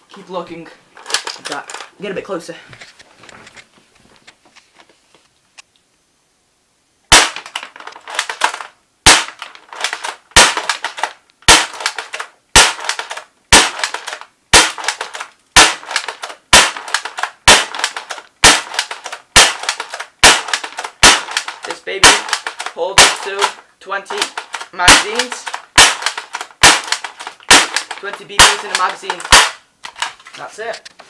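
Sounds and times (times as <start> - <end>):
airsoft rifle firing single shots: 7.1 - 29.6.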